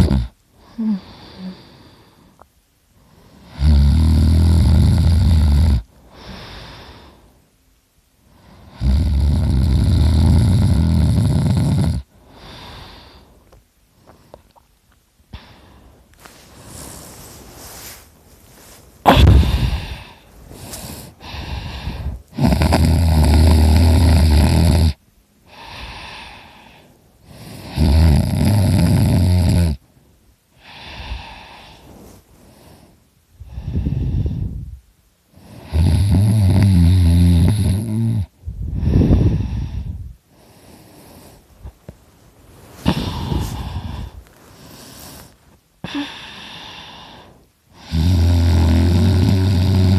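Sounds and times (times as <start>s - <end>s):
man snoring loudly: 0.0s - 1.4s, 3.4s - 5.8s, 8.7s - 12.6s, 19.1s - 26.2s, 27.3s - 29.8s, 35.5s - 38.3s, 47.8s - 49.9s
quiet breaths: 0.0s - 49.9s.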